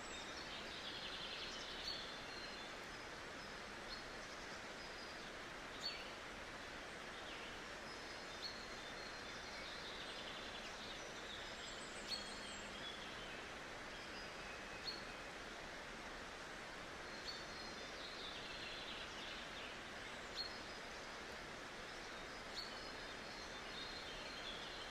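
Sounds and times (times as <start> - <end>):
outdoor background noise: 0.0 - 24.9.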